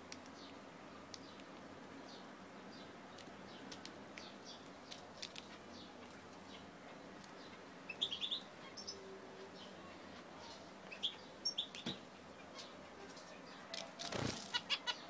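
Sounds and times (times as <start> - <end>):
finches chirping: 4.2 - 9.7, 10.4 - 12.8.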